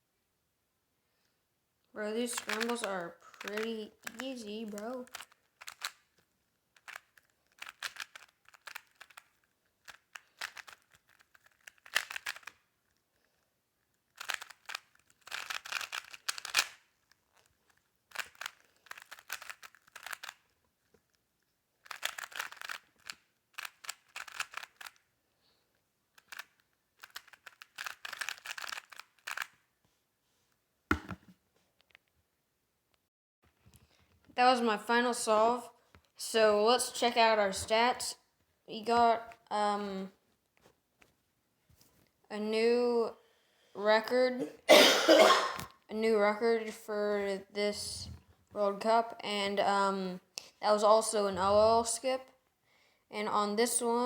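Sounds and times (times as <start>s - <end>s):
rubik's cube plastic clicking: 2.3s - 13.1s, 13.8s - 21.2s, 21.8s - 25.2s, 26.1s - 29.6s
thump: 30.9s - 31.3s.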